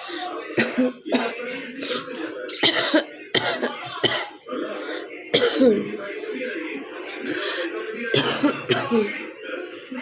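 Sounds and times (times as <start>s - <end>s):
woman coughing harshly: 0.6s - 1.4s, 2.6s - 4.4s, 5.4s - 5.9s, 8.2s - 9.0s.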